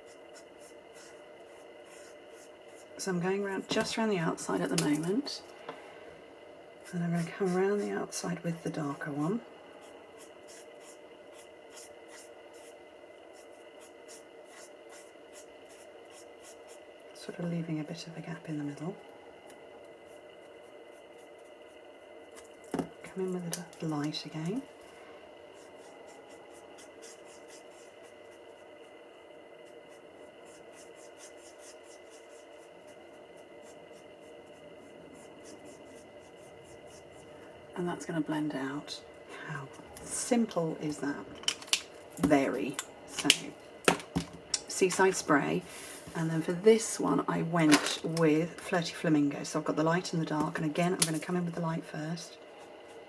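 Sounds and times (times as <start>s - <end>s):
marker scratching on card: 0.0s - 2.9s, 10.2s - 16.8s, 29.9s - 34.4s
steady low hum: 0.0s - 53.0s
marker rubbing on cardstock: 30.4s - 32.7s.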